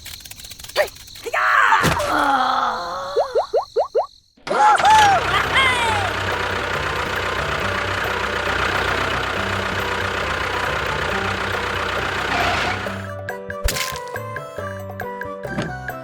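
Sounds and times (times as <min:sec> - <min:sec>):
engine idling hum: 0:04.5 - 0:13.3.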